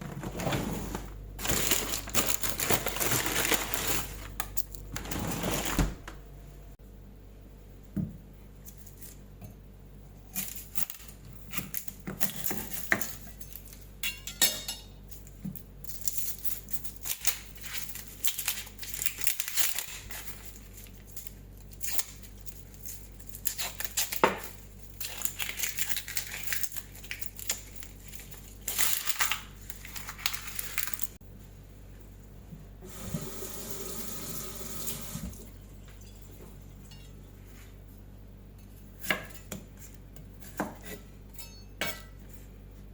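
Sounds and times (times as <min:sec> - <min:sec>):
dishes and utensils clinking: 0:12.6 - 0:15.0, 0:40.7 - 0:42.5.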